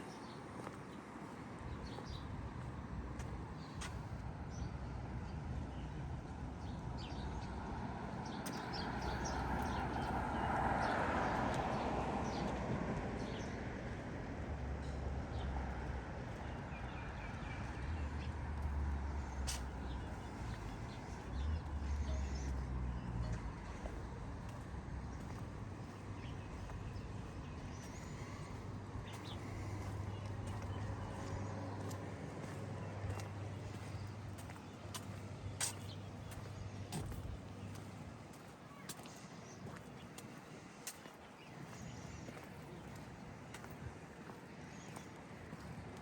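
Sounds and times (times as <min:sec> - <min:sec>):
car passing: 0:07.8 - 0:38.3
small birds chirping: 0:08.2 - 0:12.5, 0:14.8 - 0:45.8.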